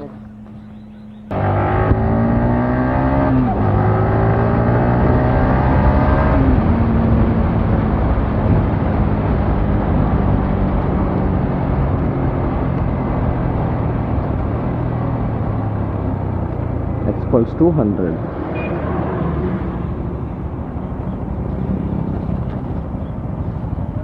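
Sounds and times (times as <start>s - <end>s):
motorcycle engine accelerating: 0.0s - 24.0s
wind noise: 4.8s - 16.7s.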